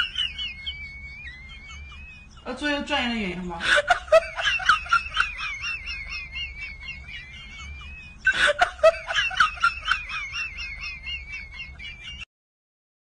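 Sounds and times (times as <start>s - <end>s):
snickering laughter: 0.0s - 2.4s, 3.6s - 12.3s
high wavering whistle-like tone: 0.0s - 2.5s.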